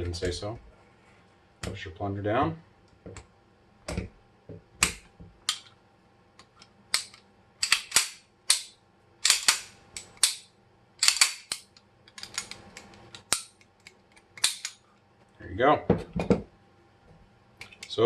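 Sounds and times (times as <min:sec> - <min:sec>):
pistol parts clicking and scraping: 0:06.4 - 0:14.8.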